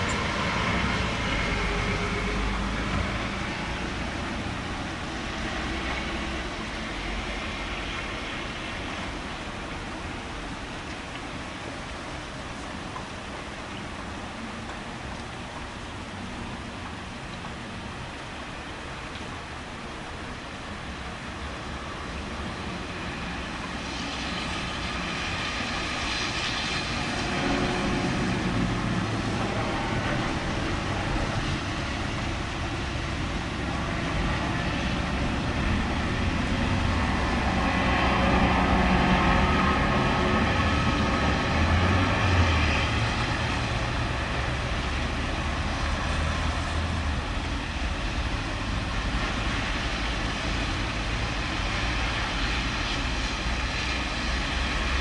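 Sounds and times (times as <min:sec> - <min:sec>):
thunder rumbling: 0:22.4 - 0:55.0.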